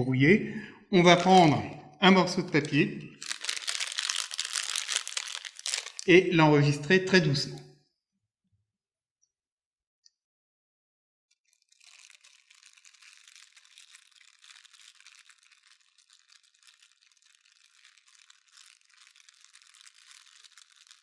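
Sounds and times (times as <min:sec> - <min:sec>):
paper crumpling with fine crackling: 0:01.1 - 0:01.6, 0:02.5 - 0:06.1, 0:11.5 - 0:21.0.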